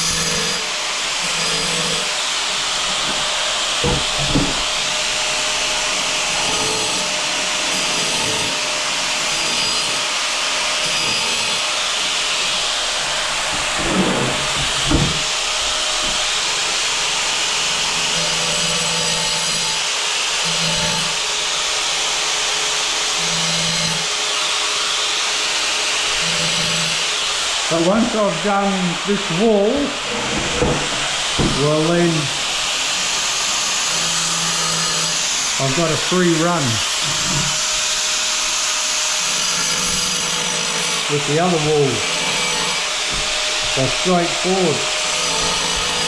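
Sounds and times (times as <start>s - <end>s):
angle grinder cutting tile: 0.0s - 46.0s.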